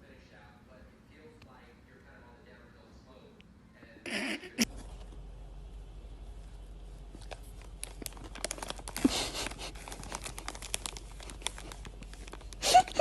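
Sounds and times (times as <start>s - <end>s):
plastic or paper crinkling: 6.4s - 13.0s.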